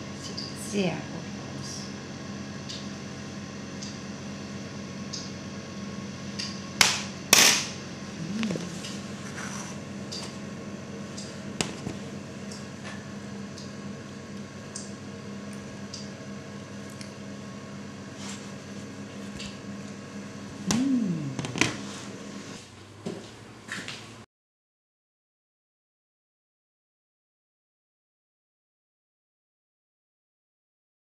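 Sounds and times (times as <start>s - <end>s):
steady low hum: 0.0s - 24.2s
click: 14.7s - 14.9s, 15.5s - 16.1s.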